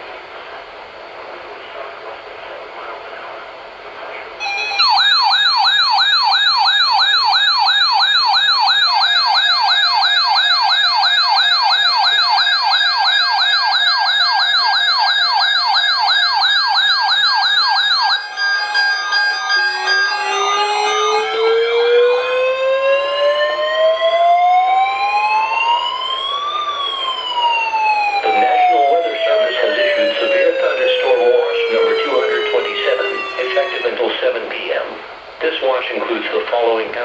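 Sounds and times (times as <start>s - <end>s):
steady beeping tones: 4.4s - 22.8s
siren-like alert yelp: 4.4s - 34.3s.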